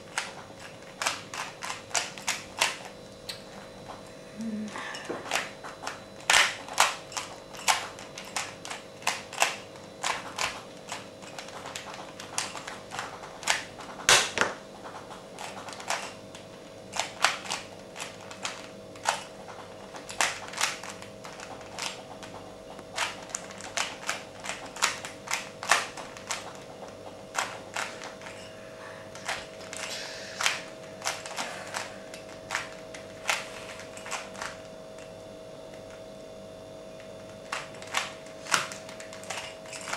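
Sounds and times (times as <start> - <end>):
puzzle cube plastic clicks: 0.1 - 2.9, 16.9 - 22.3, 22.9 - 26.7, 27.3 - 28.4, 29.1 - 34.6, 37.3 - 39.9.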